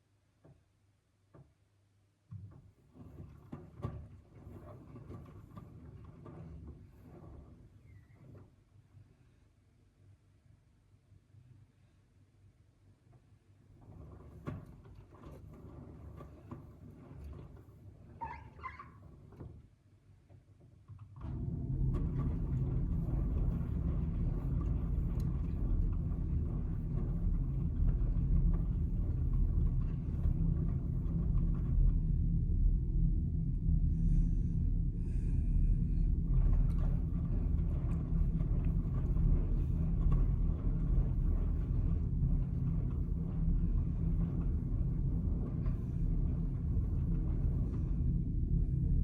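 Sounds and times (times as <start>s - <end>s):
washing machine drum rumbling: 21.1s - 49.0s.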